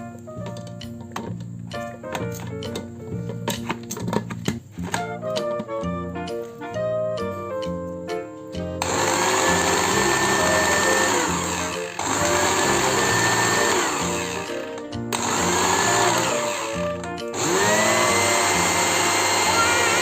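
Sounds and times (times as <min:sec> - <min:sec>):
blender motor whining: 0:08.8 - 0:20.0.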